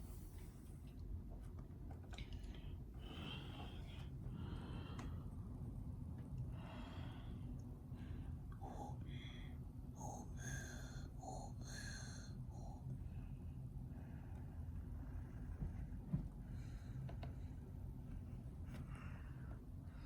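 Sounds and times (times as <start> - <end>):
air conditioners humming: 0.0 - 20.0.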